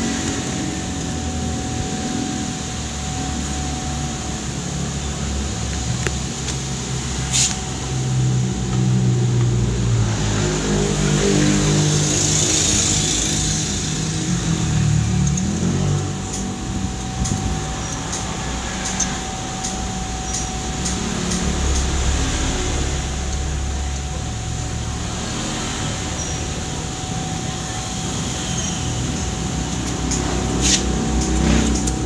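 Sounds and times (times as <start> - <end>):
constant hum: 0.0 - 32.0
motor rumbling: 0.0 - 32.0.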